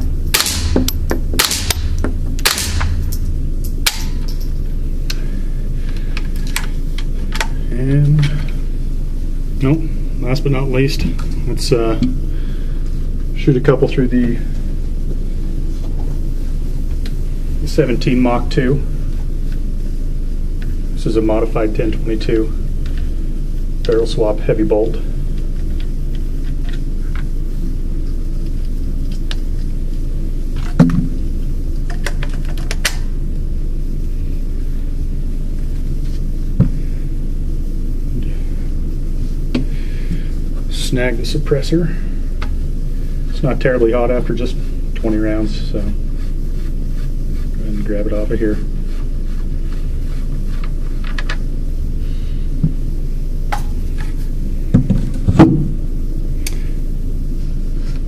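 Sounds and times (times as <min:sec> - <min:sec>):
steady low rumble: 0:00.0 - 0:32.1, 0:32.9 - 0:58.0
steady low hum: 0:00.0 - 0:58.0
suppressed rifle shot: 0:00.3 - 0:03.0.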